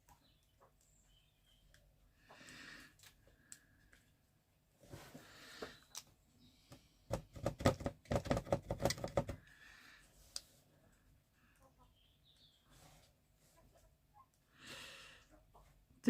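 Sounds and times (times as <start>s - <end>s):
soft rustle: 4.7s - 5.6s.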